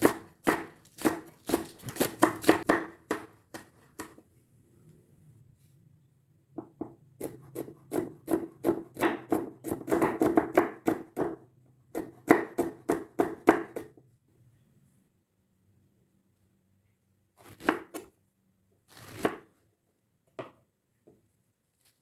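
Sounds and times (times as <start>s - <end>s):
knife chopping on cutting board: 0.0s - 4.2s, 7.2s - 11.4s, 12.0s - 13.9s, 19.0s - 19.4s.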